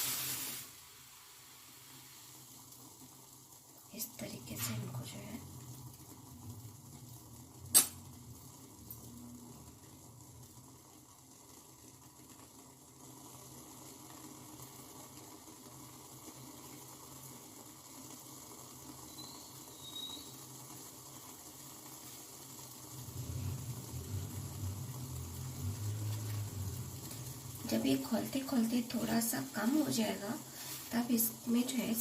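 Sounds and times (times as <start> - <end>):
liquid boiling in a pan: 0.0 - 32.0
low rumble: 22.9 - 29.9.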